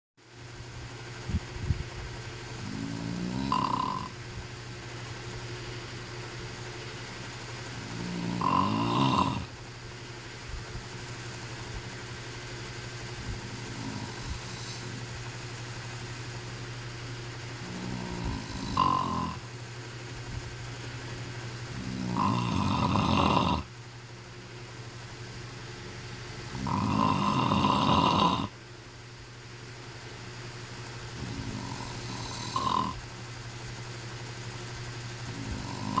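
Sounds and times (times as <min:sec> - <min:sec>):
steady low hum: 0:00.2 - 0:36.0
man snoring: 0:02.6 - 0:04.2, 0:07.8 - 0:09.6, 0:13.4 - 0:15.1, 0:17.6 - 0:19.5, 0:21.7 - 0:23.7, 0:26.5 - 0:28.6, 0:31.1 - 0:33.0, 0:35.3 - 0:36.0.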